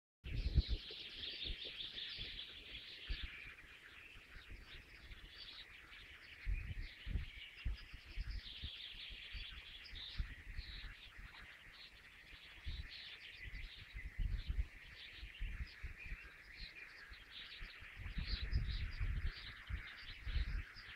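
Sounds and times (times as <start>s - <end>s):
low thumps on microphone: 0.3s - 2.4s, 6.4s - 8.7s, 18.0s - 20.7s
many birds chirping: 0.3s - 20.9s.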